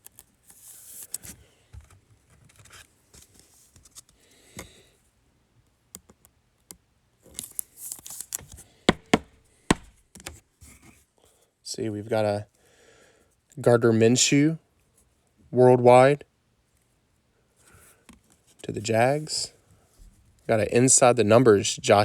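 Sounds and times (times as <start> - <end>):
cards sliding and rustling: 0.0 - 4.7, 7.2 - 11.0
sharp clicks and taps: 8.9 - 10.4.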